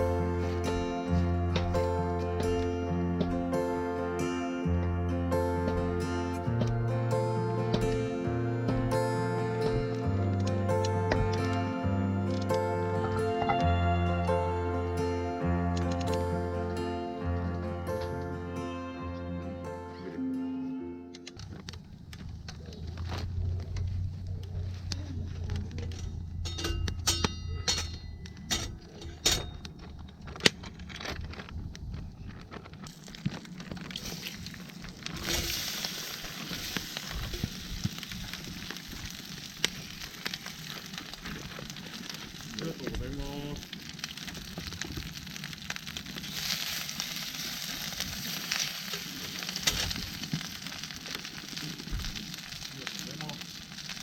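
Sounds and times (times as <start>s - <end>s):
fire sizzling and crackling: 0.0s - 20.1s, 21.2s - 27.1s, 27.8s - 54.0s
metallic clinks and knocks: 25.9s - 31.2s.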